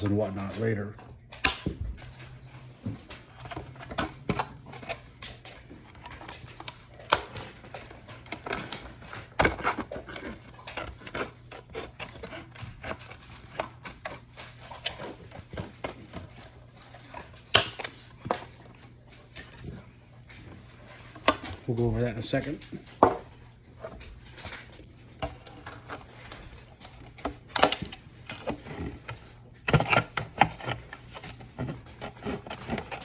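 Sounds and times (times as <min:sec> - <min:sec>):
plastic parts clicking and snapping: 0:02.9 - 0:19.8, 0:23.8 - 0:33.0.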